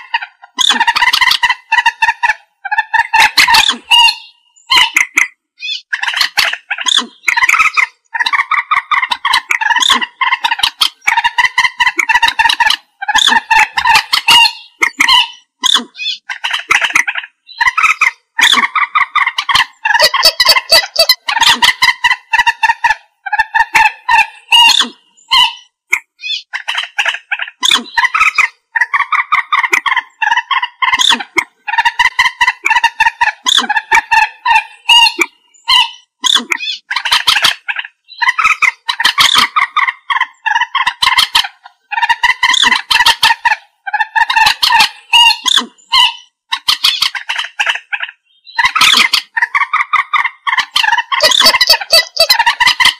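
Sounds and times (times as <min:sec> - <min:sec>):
moorhen clucking calls: 0:00.0 - 0:52.9.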